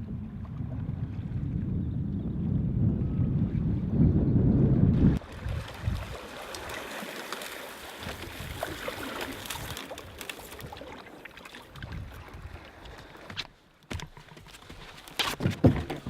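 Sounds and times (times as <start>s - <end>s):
lake water lapping: 5.1s - 13.3s
small splashes and drips: 5.2s - 13.1s.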